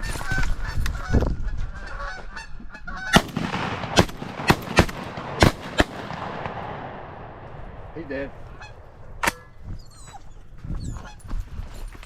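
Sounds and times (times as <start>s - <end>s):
geese honking: 0.0s - 3.3s, 8.4s - 9.6s
shotgun blasts: 3.1s - 9.5s.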